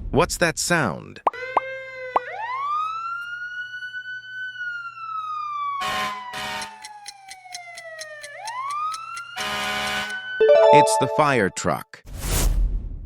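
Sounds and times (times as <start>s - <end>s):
fire truck siren wailing: 2.2s - 11.2s.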